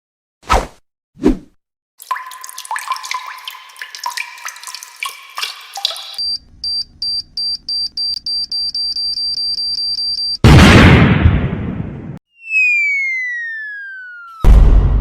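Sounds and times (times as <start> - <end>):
water-drop plinks: 2.0 - 6.2.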